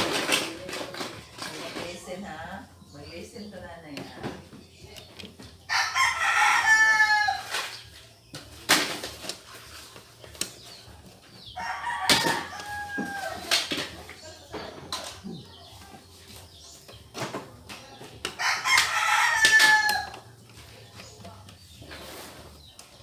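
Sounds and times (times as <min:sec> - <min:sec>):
rooster crowing: 0:05.7 - 0:07.5, 0:11.6 - 0:13.5, 0:18.4 - 0:20.2.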